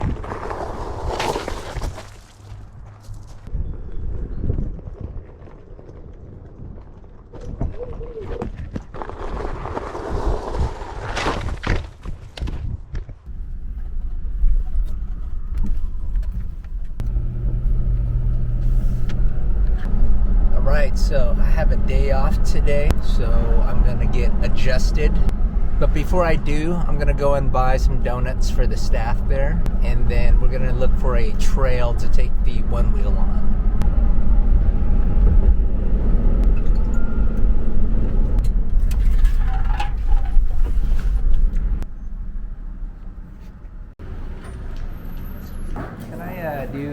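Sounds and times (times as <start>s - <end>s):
car rumbling: 13.2s - 46.9s.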